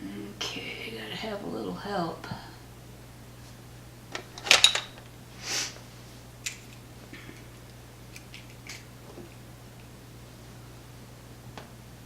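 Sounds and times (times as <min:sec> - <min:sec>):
metal hand tools clattering: 0:04.2 - 0:05.0
short breathy hiss: 0:05.3 - 0:05.9.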